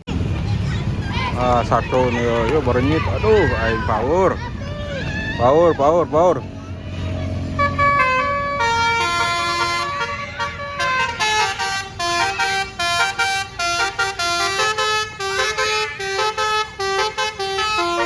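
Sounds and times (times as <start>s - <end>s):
bus horn playing a tune: 7.4s - 18.0s.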